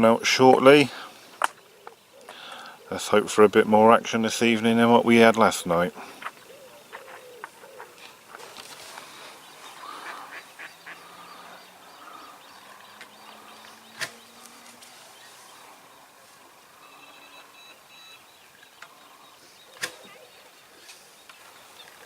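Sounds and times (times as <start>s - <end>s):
waterfowl calling: 6.0s - 22.0s
sharp clicks: 13.9s - 14.6s.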